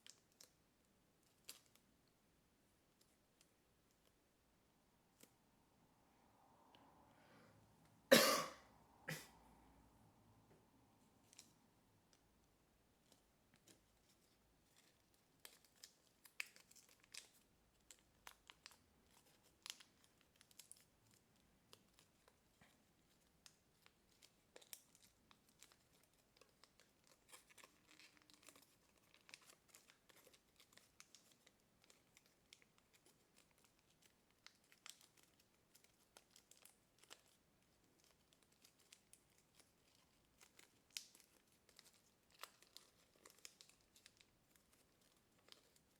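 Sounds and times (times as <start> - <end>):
paper crinkling and creasing: 12.9 - 45.9.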